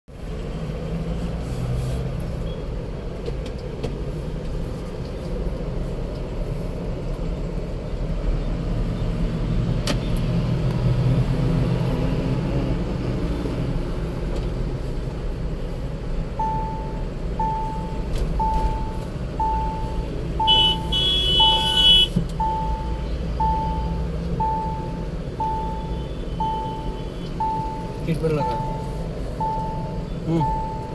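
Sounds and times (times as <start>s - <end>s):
road and wind noise drone: 0.1s - 30.9s
high tone: 16.4s - 30.9s
warning chime beeping: 16.4s - 30.9s.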